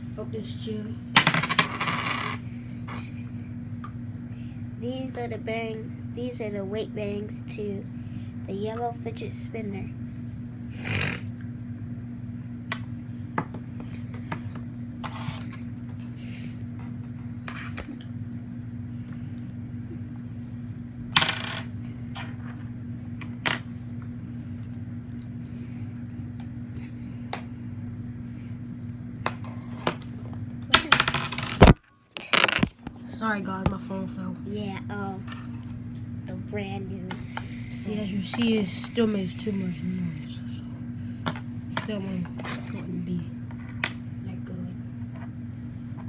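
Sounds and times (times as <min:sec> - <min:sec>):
steady low hum: 0:00.0 - 0:46.0
fidget spinner clicking: 0:37.0 - 0:40.4.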